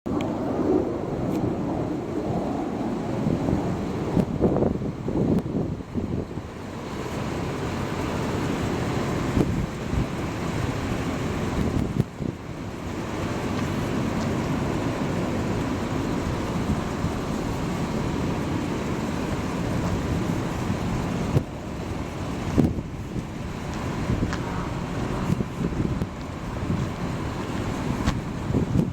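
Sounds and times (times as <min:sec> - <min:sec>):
wind buffeting microphone: 0:00.1 - 0:28.9
low vehicle rumble: 0:07.1 - 0:28.9.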